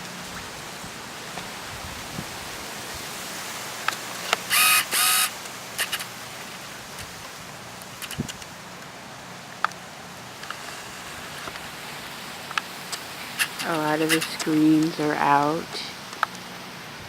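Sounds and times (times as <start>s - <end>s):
steady hiss: 0.0s - 17.0s
autofocus motor whirs: 4.4s - 6.0s.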